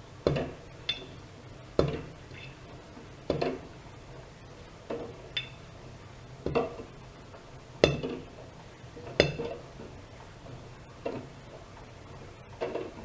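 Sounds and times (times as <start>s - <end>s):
low steady hum: 0.0s - 13.0s
laundry knocking in washing drum: 1.8s - 2.2s, 7.8s - 8.3s.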